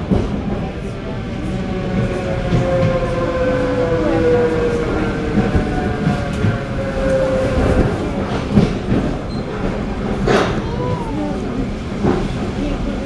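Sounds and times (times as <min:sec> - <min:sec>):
train rumble: 0:00.0 - 0:13.0.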